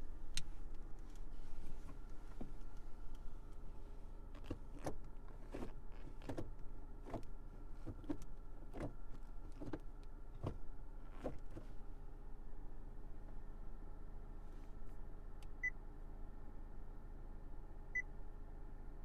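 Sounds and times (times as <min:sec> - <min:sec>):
engine idling hum: 0:00.0 - 0:19.0.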